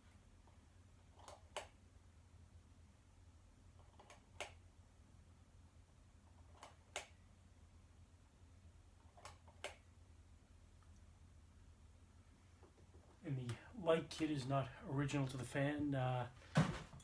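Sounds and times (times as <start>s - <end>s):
ceiling fan low hum: 0.0s - 17.0s
ceiling fan faint clicks: 10.7s - 11.2s.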